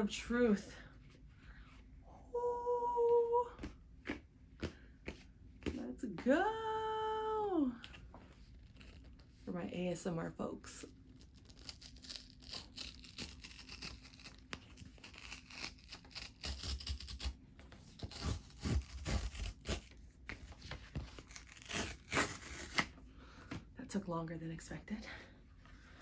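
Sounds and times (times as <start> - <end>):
packaging tearing and crinkling: 11.2 - 17.3, 21.0 - 22.9.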